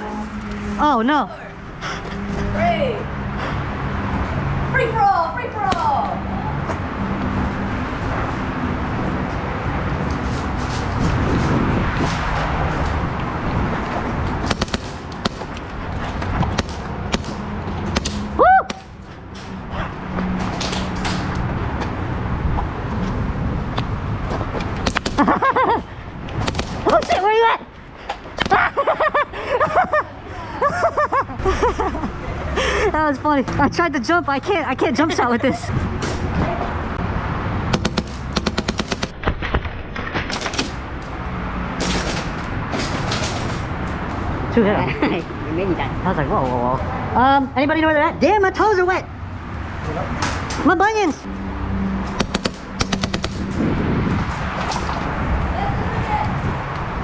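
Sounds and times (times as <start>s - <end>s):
airsoft gun shots: 14.4s - 15.4s, 26.4s - 27.2s, 37.7s - 39.4s, 52.2s - 53.5s.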